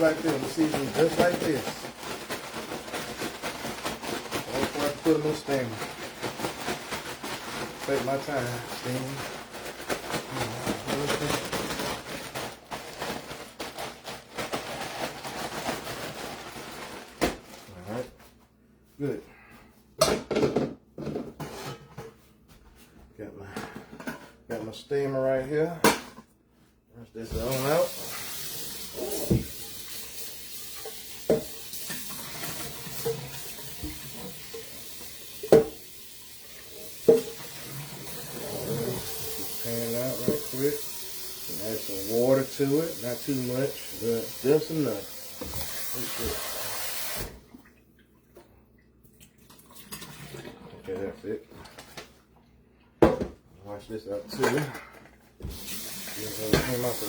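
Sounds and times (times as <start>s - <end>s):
plastic bag crinkling: 0.0s - 18.0s, 37.0s - 46.5s.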